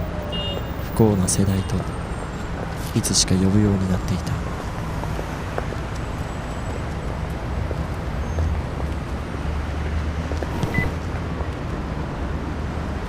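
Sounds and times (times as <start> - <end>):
faint high beep: 10.6 - 10.9.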